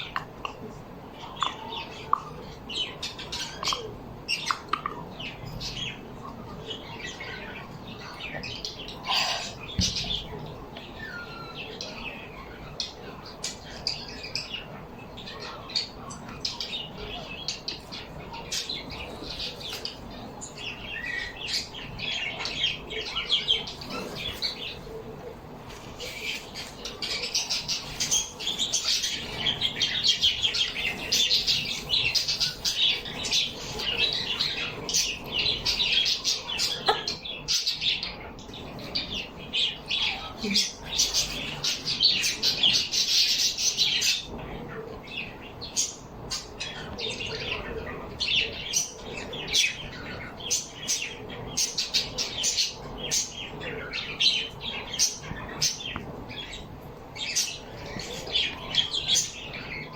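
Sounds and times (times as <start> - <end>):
small birds chirping and chattering: 0.0 - 59.9.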